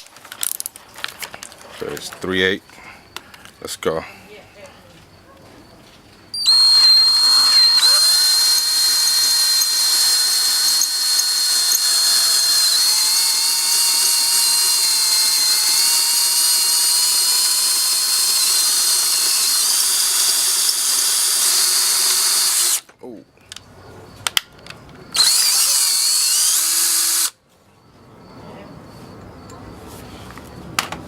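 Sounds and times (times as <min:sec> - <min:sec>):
electric drill whining: 0:06.4 - 0:22.9, 0:25.1 - 0:27.4.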